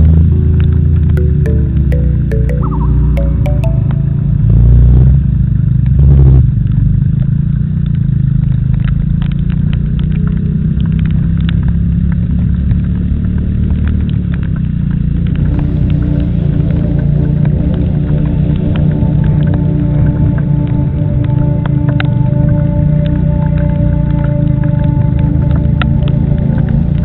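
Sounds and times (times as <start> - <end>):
music: 0.0 - 4.9, 15.4 - 27.0.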